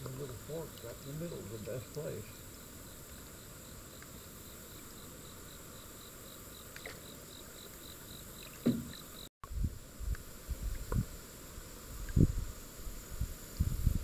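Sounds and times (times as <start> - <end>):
constant high buzz: 0.0 - 14.0
insect chirping: 0.0 - 14.0
thump: 8.6 - 9.0.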